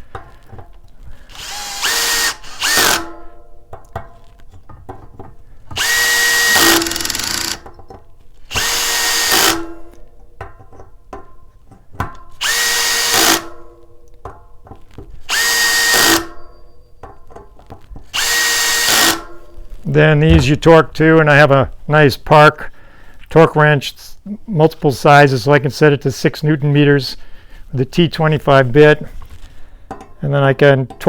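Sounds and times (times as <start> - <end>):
power driver motor whine: 1.3 - 3.2, 5.8 - 7.7, 8.5 - 9.8, 12.4 - 13.5, 15.3 - 16.5, 18.2 - 19.3.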